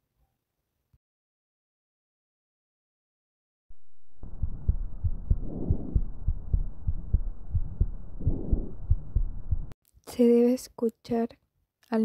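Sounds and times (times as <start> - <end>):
heartbeat through stethoscope: 3.7 - 9.8.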